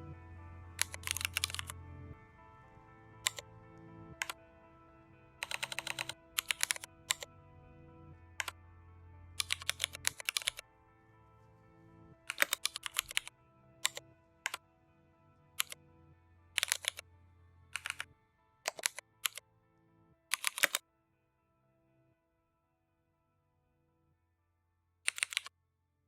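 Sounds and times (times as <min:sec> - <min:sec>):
soft background music: 0:00.0 - 0:22.4
computer keyboard typing: 0:00.8 - 0:01.7, 0:03.2 - 0:03.4, 0:05.4 - 0:07.3, 0:09.4 - 0:10.6, 0:12.3 - 0:14.6, 0:16.6 - 0:17.0, 0:17.8 - 0:18.1, 0:18.7 - 0:19.4, 0:20.3 - 0:20.8, 0:25.1 - 0:25.5.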